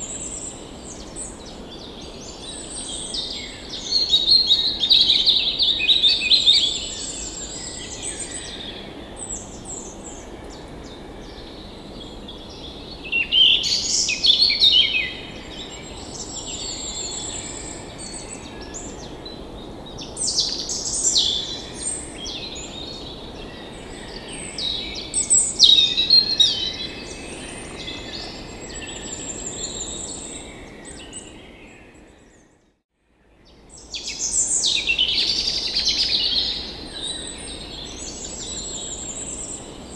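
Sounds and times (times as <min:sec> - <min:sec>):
birds singing and chirping: 0:33.7 - 0:39.9.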